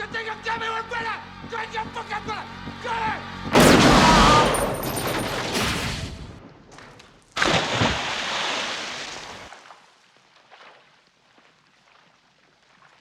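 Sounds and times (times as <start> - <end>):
stylised gunfire bursts: 3.6 - 6.1.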